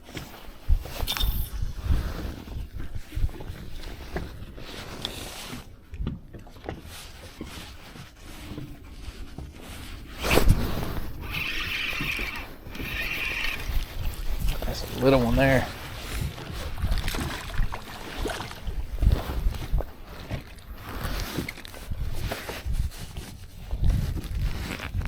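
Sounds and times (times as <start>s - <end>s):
bump or splash: 10.2s - 20.5s.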